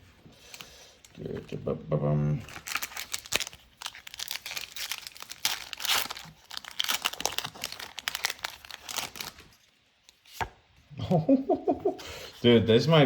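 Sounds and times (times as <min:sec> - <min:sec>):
foil wrapper crinkling and tearing: 0:02.3 - 0:10.3.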